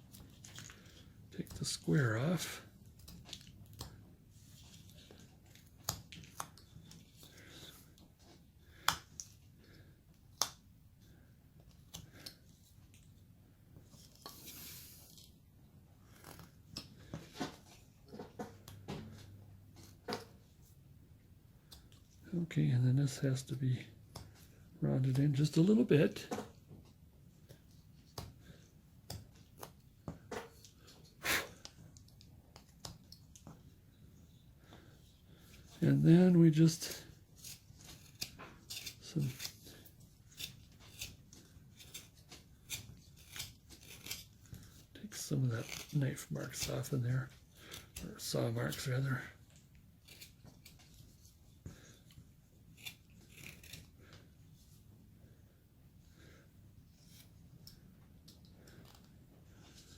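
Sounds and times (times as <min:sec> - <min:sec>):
knife carving wood: 0:00.0 - 0:15.4, 0:27.4 - 0:59.9
knife slicing wood: 0:37.4 - 0:44.9, 0:52.7 - 0:54.0.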